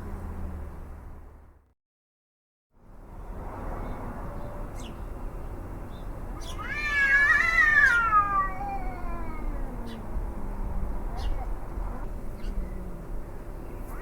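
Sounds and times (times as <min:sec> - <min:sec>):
cat howling: 0:06.4 - 0:13.1.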